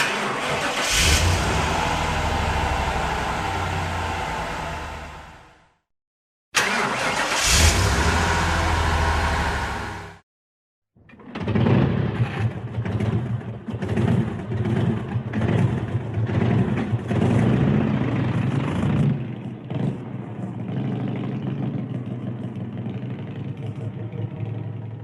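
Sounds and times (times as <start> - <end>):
car engine revving and idling: 0.0 - 5.6, 6.6 - 10.2.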